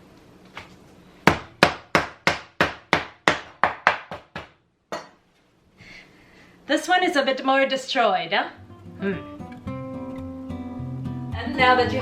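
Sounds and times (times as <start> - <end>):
meat being pounded: 1.2 - 4.6.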